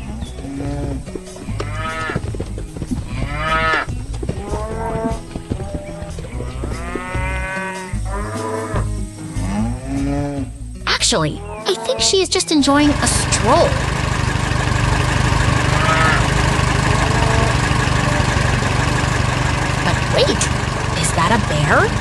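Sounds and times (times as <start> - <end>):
cattle mooing: 0.0 - 2.2, 3.0 - 10.6, 15.7 - 18.7.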